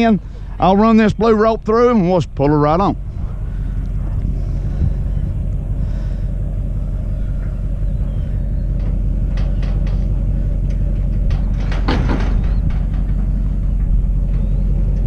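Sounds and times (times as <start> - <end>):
truck engine rumbling: 0.0 - 15.0.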